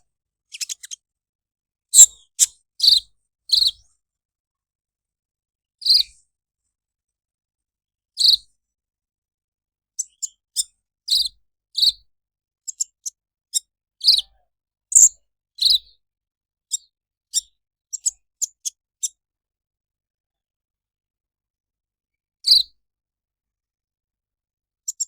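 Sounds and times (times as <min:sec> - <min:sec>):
bird chirping: 0:00.0 - 0:01.0, 0:01.9 - 0:03.9, 0:05.8 - 0:06.2, 0:08.2 - 0:08.4, 0:10.0 - 0:12.0, 0:12.7 - 0:16.0, 0:16.7 - 0:19.2, 0:22.4 - 0:22.7.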